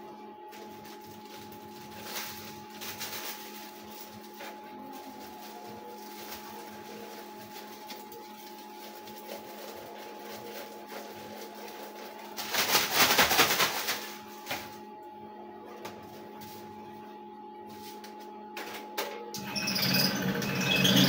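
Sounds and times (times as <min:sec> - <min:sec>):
cotton candy machine motor hum: 0:00.0 - 0:21.0
loud crackly noise: 0:01.4 - 0:14.7.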